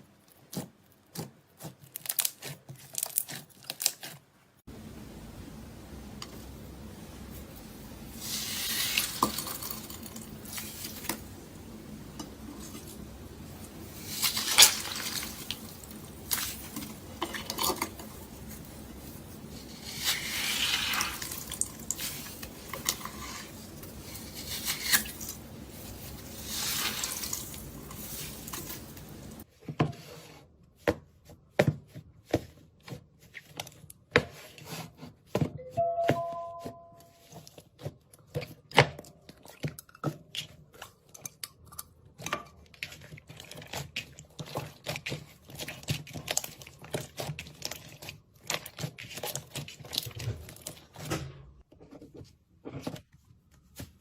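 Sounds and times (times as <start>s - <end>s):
slime crackling and popping: 0.5s - 4.2s.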